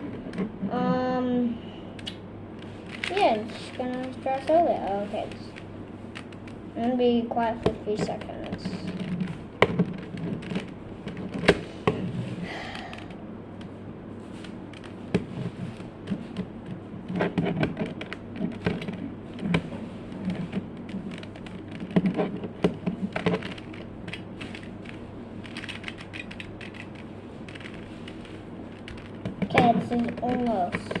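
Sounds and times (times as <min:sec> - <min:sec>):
plastic puzzle cube layers clicking: 0:02.0 - 0:04.6, 0:14.4 - 0:15.2, 0:20.2 - 0:31.0.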